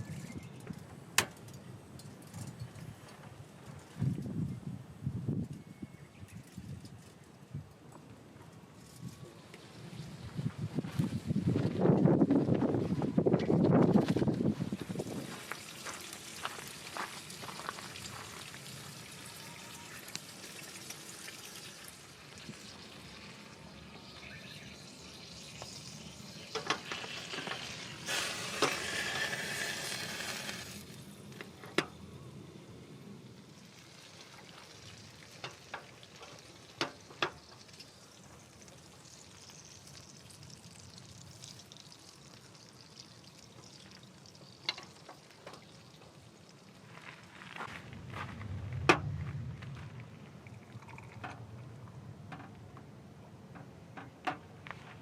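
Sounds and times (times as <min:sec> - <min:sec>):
food sizzling in a pan: 0:15.5 - 0:30.9.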